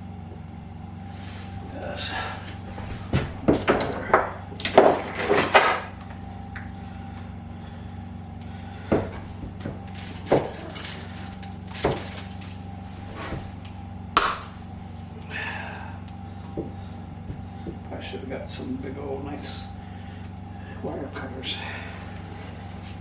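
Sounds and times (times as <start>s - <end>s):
steady low hum: 0.0s - 23.0s
hand tools clicking and knocking: 1.6s - 6.8s, 8.4s - 13.4s.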